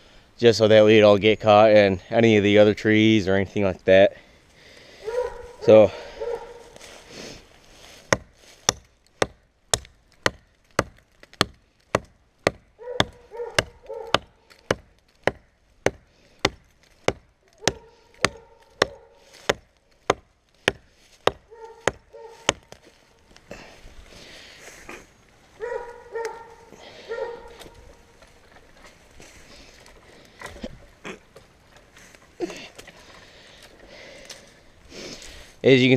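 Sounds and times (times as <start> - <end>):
hatchet chopping tree trunk: 8.0 - 23.0.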